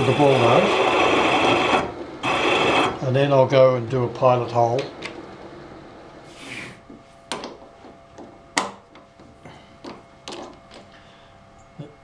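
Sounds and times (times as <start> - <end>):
short hiss: 6.3 - 6.8.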